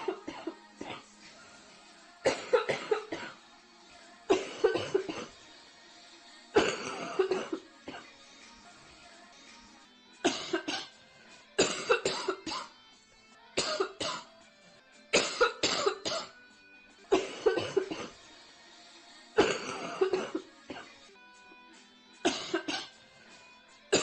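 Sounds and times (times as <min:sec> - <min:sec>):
girl coughing harshly: 0:00.0 - 0:01.0, 0:02.2 - 0:03.4, 0:04.3 - 0:05.3, 0:06.6 - 0:08.0, 0:10.2 - 0:10.9, 0:11.6 - 0:12.7, 0:13.6 - 0:14.3, 0:15.1 - 0:16.4, 0:17.1 - 0:18.1, 0:19.4 - 0:20.9, 0:22.2 - 0:23.0
faint background music: 0:00.0 - 0:24.0.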